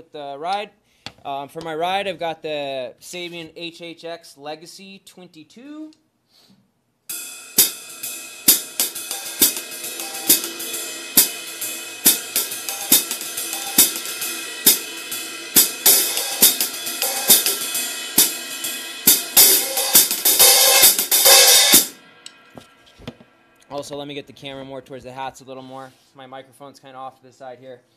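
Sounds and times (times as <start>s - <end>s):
drum kit playing a steady beat: 7.1s - 23.2s
ride cymbal wash: 7.1s - 23.7s.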